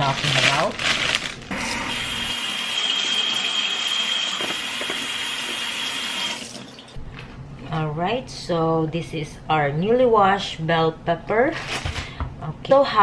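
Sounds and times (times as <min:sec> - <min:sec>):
kitchen tap running: 0:01.6 - 0:07.0.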